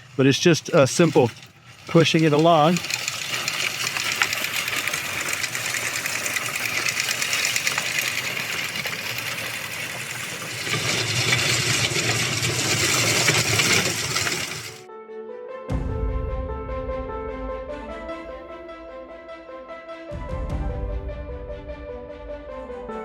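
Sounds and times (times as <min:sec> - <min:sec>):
push seeder clicking rattle: 0:00.0 - 0:14.8.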